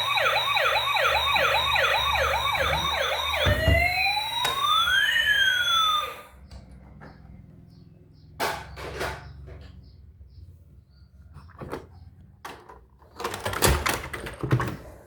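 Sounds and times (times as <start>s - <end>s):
toy electronic siren: 0.0s - 6.4s.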